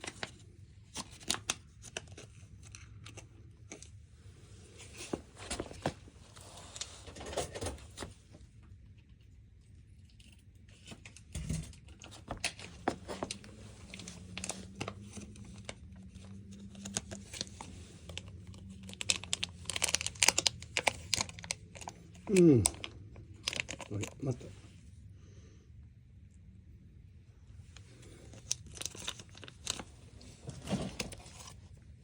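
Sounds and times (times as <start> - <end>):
cat chewing crunchy treats: 12.0 - 25.1, 27.6 - 32.0.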